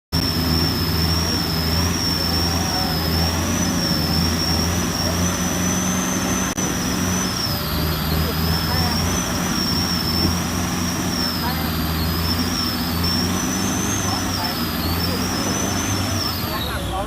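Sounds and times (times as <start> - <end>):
engine running hard under load: 0.1 - 17.0
high whine: 0.1 - 17.0.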